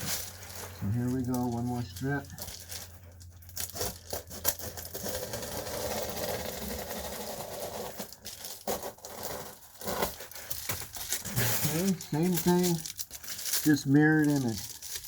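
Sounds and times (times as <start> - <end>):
foil insulation crinkling: 0.0 - 15.0
scraping tearing noise: 3.6 - 15.0.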